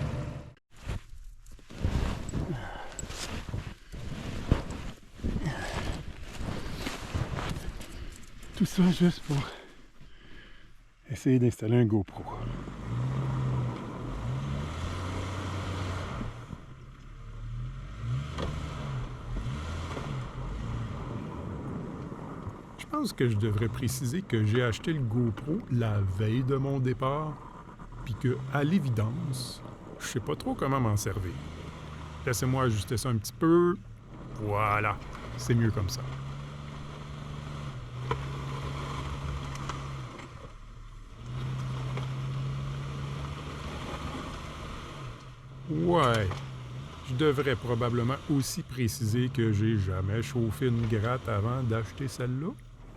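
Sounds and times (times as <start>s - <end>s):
car engine running: 0.0s - 0.6s, 12.1s - 52.9s.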